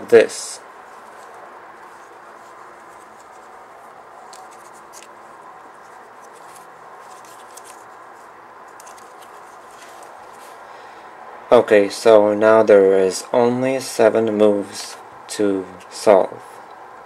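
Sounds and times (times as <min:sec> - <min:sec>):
background hiss: 0:00.0 - 0:17.0.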